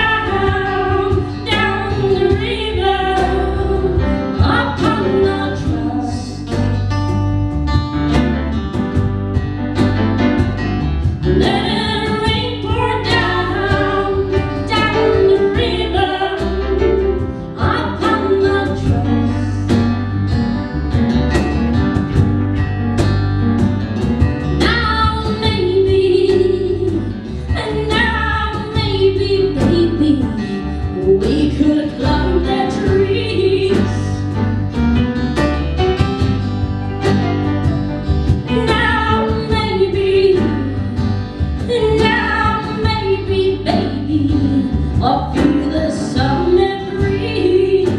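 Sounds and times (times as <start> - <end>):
woman singing: 0.0 - 6.8, 11.2 - 20.4, 24.6 - 34.5, 38.3 - 47.9
acoustic band playing: 0.0 - 47.9.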